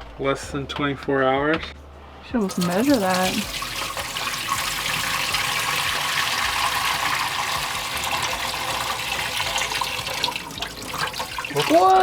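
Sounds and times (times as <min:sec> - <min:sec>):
water pouring in a stream: 0:02.4 - 0:12.0.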